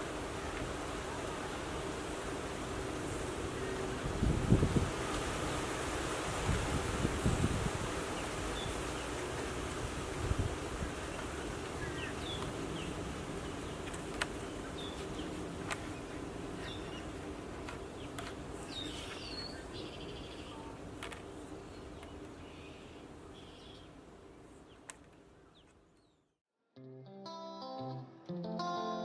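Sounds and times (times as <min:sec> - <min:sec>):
wind hiss: 0:00.0 - 0:24.8
small birds chirping: 0:10.2 - 0:20.8, 0:21.5 - 0:24.0.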